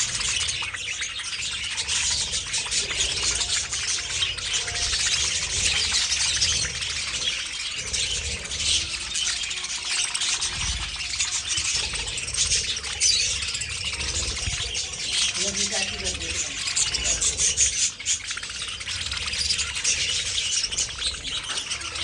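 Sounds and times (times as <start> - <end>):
budgerigars chattering and chirping: 0.0 - 22.0.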